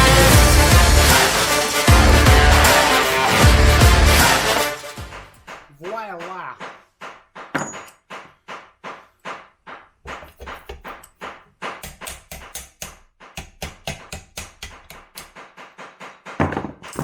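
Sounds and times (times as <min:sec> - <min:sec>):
hammer striking metal punch: 0:10.1 - 0:15.4.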